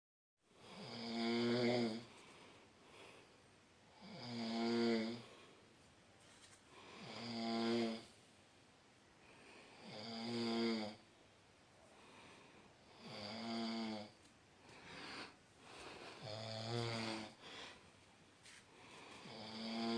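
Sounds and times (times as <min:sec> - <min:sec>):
person snoring: 0:00.6 - 0:02.1, 0:04.0 - 0:05.3, 0:06.9 - 0:08.1, 0:09.7 - 0:11.0, 0:12.8 - 0:14.2, 0:14.8 - 0:17.8, 0:18.8 - 0:19.9.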